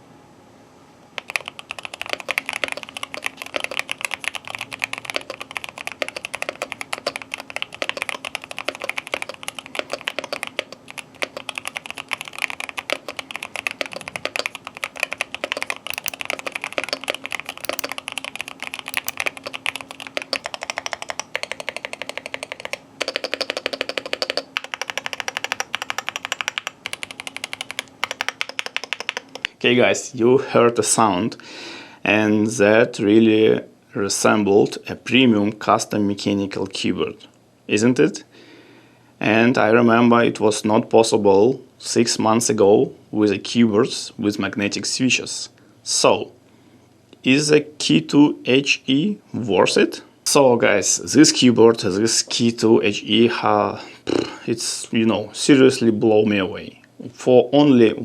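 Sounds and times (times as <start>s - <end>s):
fast keyboard typing: 1.2s - 29.5s.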